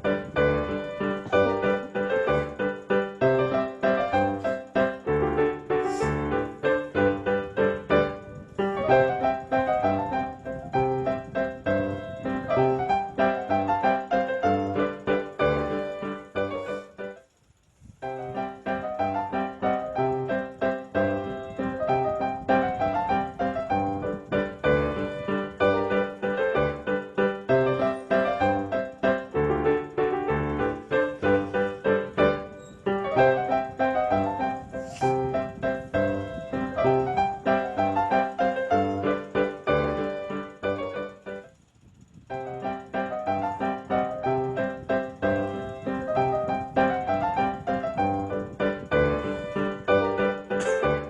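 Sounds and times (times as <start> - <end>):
lively piano music: 0.0 - 17.3, 18.0 - 51.0.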